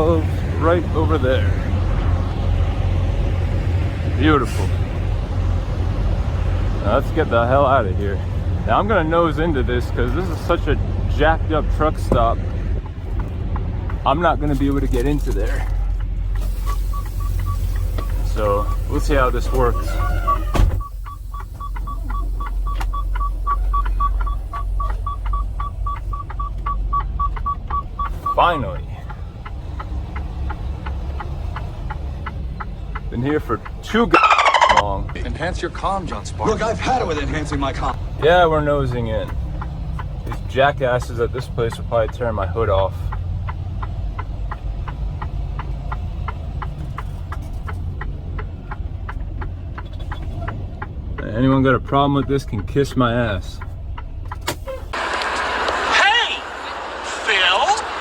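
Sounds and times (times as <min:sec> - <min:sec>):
truck engine idling: 0:00.0 - 0:58.0
turn signal clicking: 0:12.1 - 0:55.9
rapid electronic warning beeps: 0:16.4 - 0:29.1, 0:34.1 - 0:34.9.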